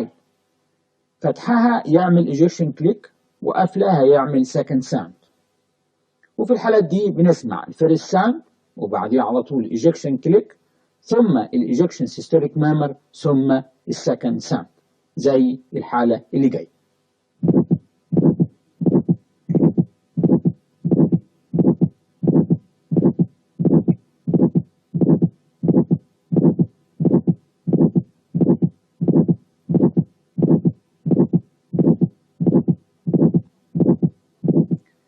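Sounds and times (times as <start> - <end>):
heart ejection click: 17.4 - 34.8
heart murmur: 17.4 - 34.9
heartbeat sounds: 17.4 - 34.9.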